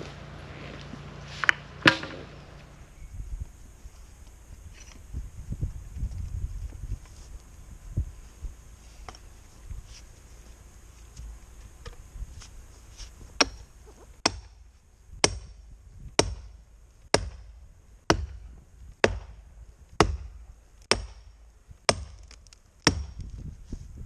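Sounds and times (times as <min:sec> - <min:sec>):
maul striking steel wedges: 0:00.0 - 0:02.9, 0:13.4 - 0:15.6, 0:16.2 - 0:19.4, 0:20.0 - 0:23.2.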